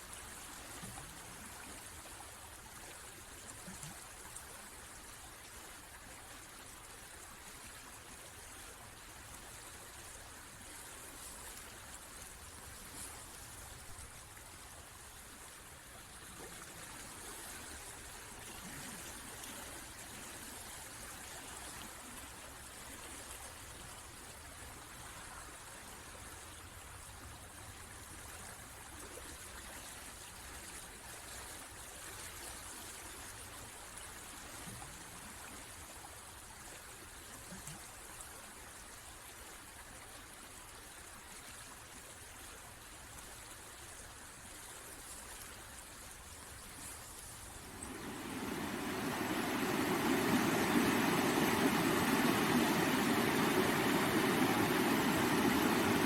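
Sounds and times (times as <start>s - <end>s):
river water flowing: 38.0s - 56.0s.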